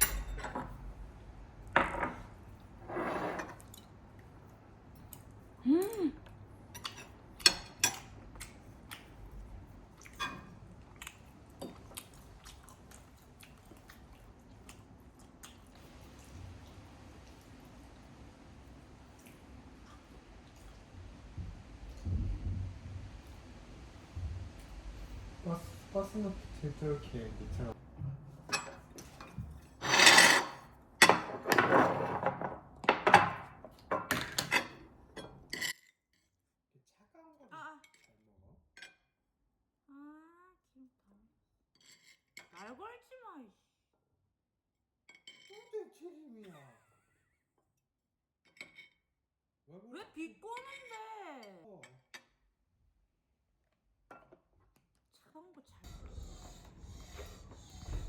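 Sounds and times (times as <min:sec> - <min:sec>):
chewing: 0:10.8 - 0:17.6.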